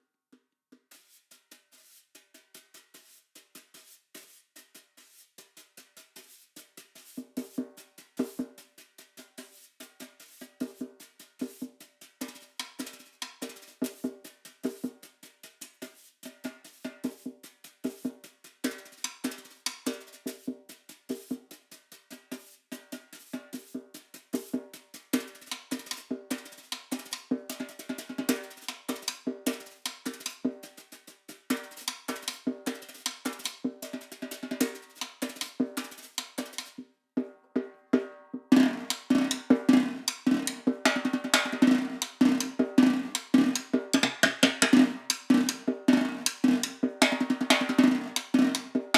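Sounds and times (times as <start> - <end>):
snare drum rolls and strokes: 9.4 - 37.3, 38.0 - 48.9
rim clicks on snare drum: 18.7 - 20.2, 25.3 - 30.8, 31.5 - 36.8, 38.6 - 48.7.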